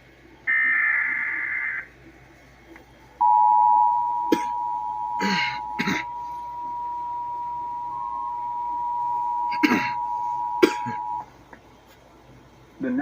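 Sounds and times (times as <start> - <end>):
two-tone attention signal: 3.2 - 11.3
person coughing: 4.3 - 6.3, 9.5 - 11.2.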